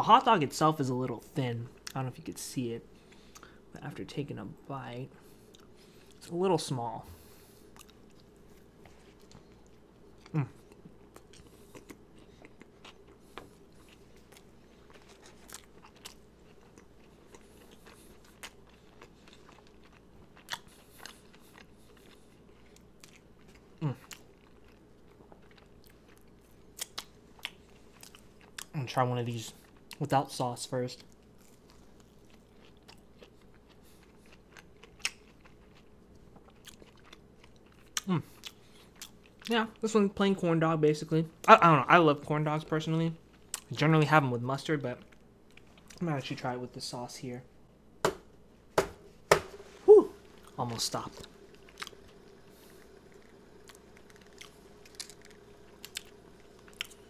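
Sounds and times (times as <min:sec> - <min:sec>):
chewing with wet mouth clicks: 0:07.7 - 0:28.8, 0:31.0 - 0:39.5, 0:43.3 - 0:43.7, 0:51.2 - 0:57.0.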